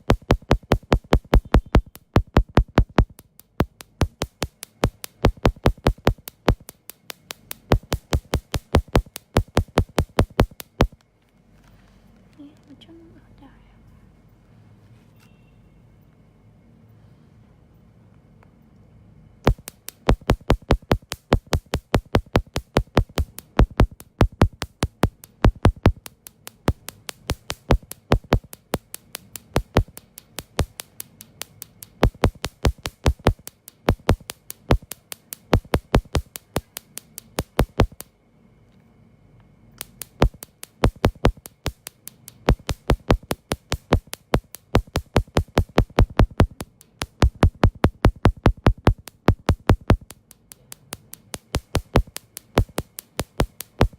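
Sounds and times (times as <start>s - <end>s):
laser pulses snapping clicks: 0.0s - 11.0s, 19.4s - 38.1s, 39.8s - 53.9s.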